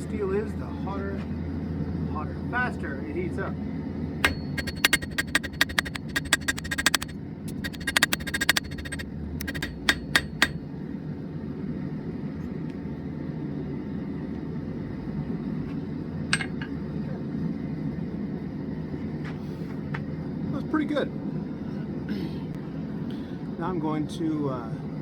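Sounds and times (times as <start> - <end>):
hammer striking metal on anvil: 4.2 - 10.6, 16.3 - 16.8.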